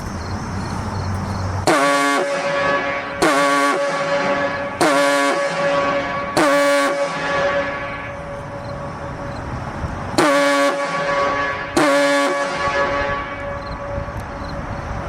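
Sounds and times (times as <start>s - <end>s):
horn-like blasts: 1.6s - 9.3s, 10.2s - 14.2s
siren steady tone: 1.7s - 9.5s.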